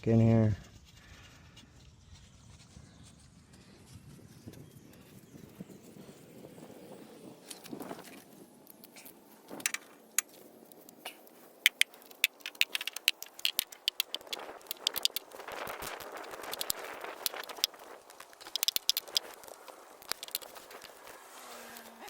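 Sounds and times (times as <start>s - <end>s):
hand tools clicking and clinking: 8.8s - 21.1s
scraping rustle: 13.7s - 22.0s.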